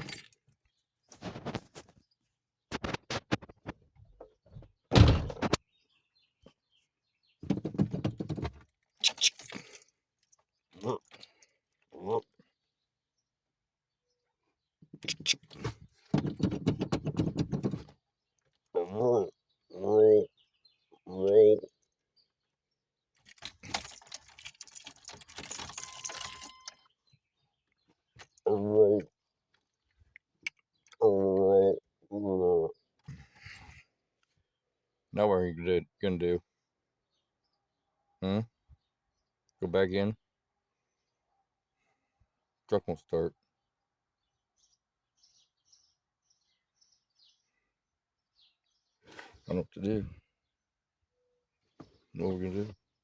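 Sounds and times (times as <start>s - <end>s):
keys jangling: 0.0s - 0.5s, 9.0s - 10.4s, 23.2s - 26.8s
vehicle door shutting: 4.9s - 5.6s.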